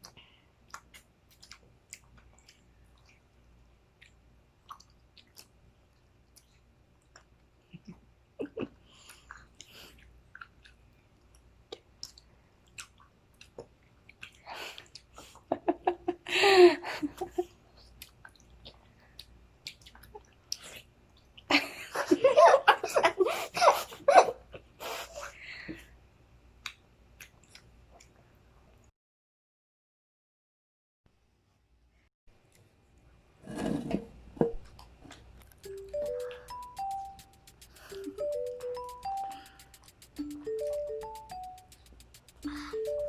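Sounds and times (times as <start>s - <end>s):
people chewing mangoes: 0.0s - 15.6s, 17.1s - 21.5s, 26.6s - 28.4s, 41.7s - 43.0s.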